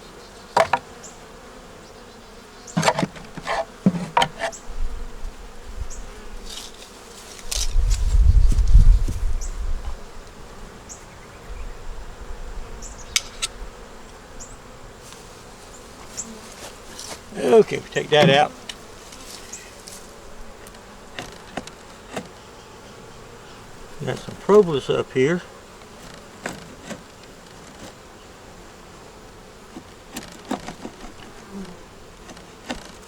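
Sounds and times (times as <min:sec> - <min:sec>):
honey bees humming: 0:00.0 - 0:33.0
hive parts knocking and clicking: 0:00.6 - 0:00.9, 0:02.8 - 0:04.6, 0:20.6 - 0:22.4, 0:29.7 - 0:33.0.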